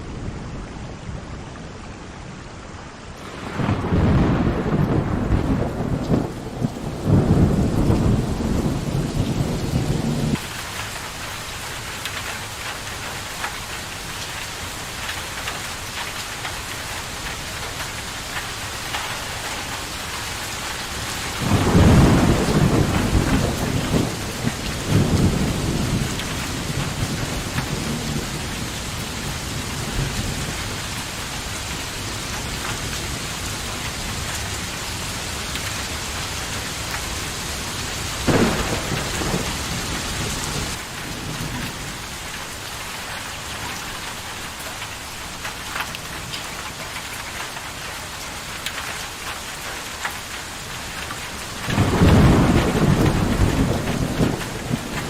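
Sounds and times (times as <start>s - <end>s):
steady rain falling: 0.0s - 55.0s
sharp thunder crack: 3.2s - 10.4s, 21.4s - 28.3s, 38.2s - 41.6s, 51.7s - 55.0s
thunder rumble: 3.2s - 10.6s, 21.3s - 42.6s, 51.6s - 55.0s.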